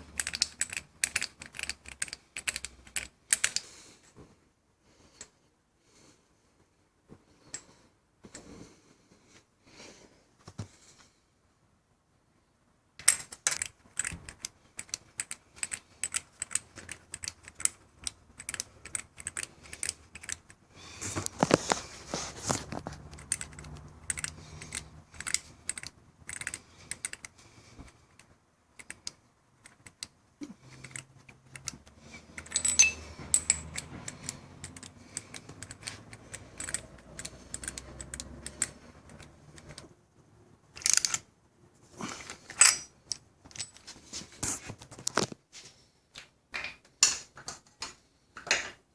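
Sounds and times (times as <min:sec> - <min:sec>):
metal parts and tools clicking: 0:00.0 - 0:03.7, 0:13.0 - 0:21.8, 0:22.5 - 0:39.9, 0:40.7 - 0:41.3, 0:42.2 - 0:43.9.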